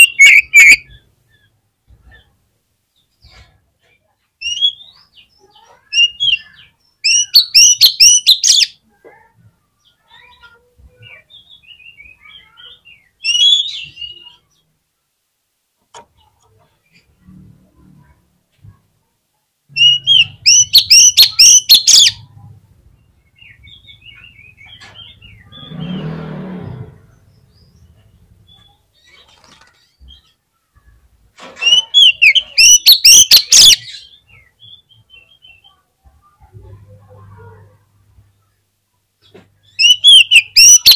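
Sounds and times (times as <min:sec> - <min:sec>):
bird singing whistles and clicks: 0:00.0 - 0:00.8, 0:39.8 - 0:40.9.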